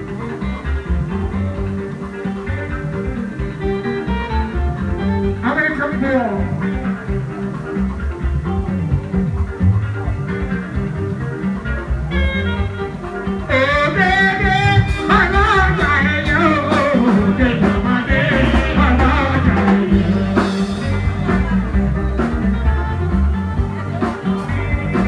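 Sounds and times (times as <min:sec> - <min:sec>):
band music with bass and drums: 0:00.0 - 0:25.0
person singing lead vocals: 0:13.5 - 0:22.3.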